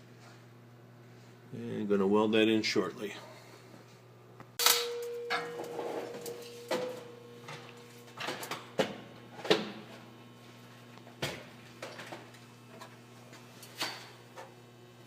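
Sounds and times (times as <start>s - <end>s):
faint steady hum: 0.0s - 15.0s
metal tools knocking and clinking: 4.6s - 7.7s.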